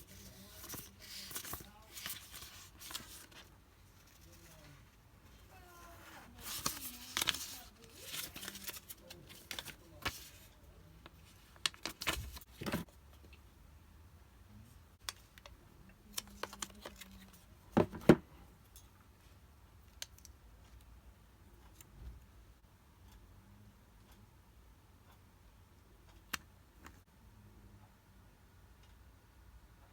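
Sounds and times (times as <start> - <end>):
packaging rustling and clicking: 6.3 - 10.4.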